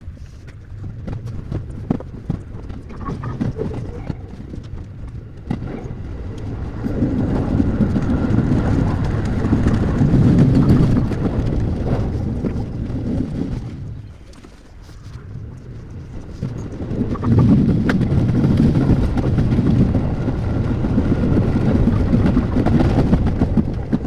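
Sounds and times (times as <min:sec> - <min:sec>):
train low rumble: 0:00.0 - 0:24.0.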